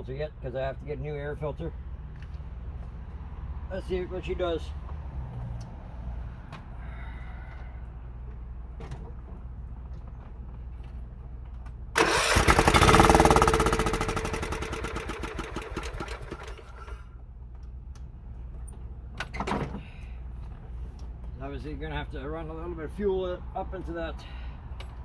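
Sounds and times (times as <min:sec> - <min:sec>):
lawn tractor engine cranking: 0:12.0 - 0:17.1.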